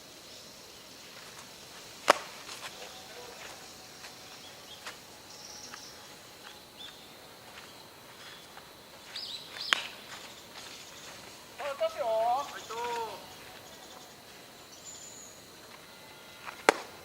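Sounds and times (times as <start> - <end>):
outdoor background noise: 0.0 - 17.0
bat hitting ball crack: 2.0 - 2.4, 16.4 - 17.0.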